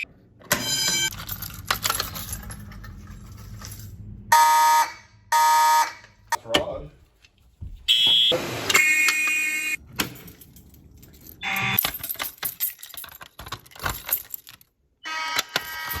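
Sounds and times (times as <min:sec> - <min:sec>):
metallic clicks and rattles: 0:01.1 - 0:03.9, 0:09.9 - 0:14.8
fire alarm electronic tone: 0:04.3 - 0:06.0, 0:07.9 - 0:09.8, 0:15.0 - 0:16.0.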